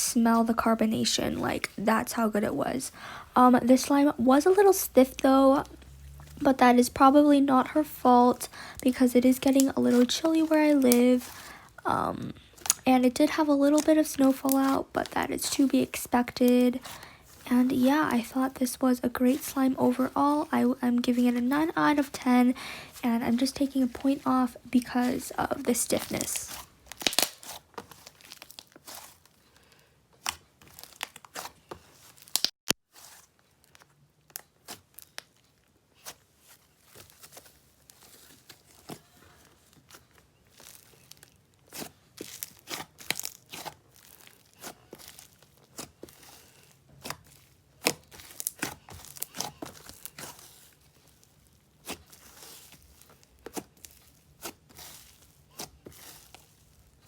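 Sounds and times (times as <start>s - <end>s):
slime being squished by hand: 13.6s - 15.9s, 23.4s - 29.4s, 30.2s - 57.0s.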